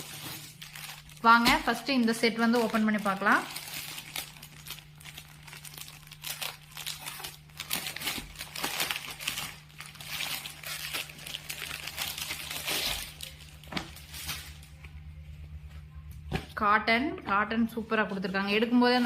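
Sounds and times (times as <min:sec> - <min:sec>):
plastic packaging crinkling: 0:00.0 - 0:15.0
faint low hum: 0:00.0 - 0:19.0.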